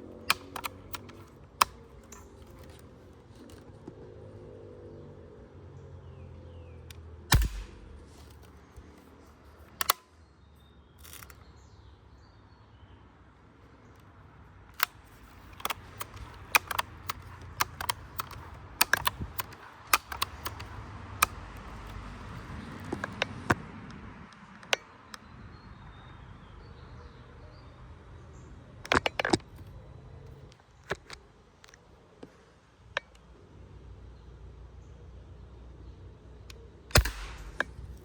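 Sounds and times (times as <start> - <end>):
rifle cocking and pumping clicks: 0.0 - 3.6, 6.9 - 10.1, 11.0 - 11.4, 14.7 - 23.6, 28.9 - 29.6, 30.8 - 31.8, 36.5 - 38.0
air rifle shot: 7.3 - 8.4, 36.9 - 38.0.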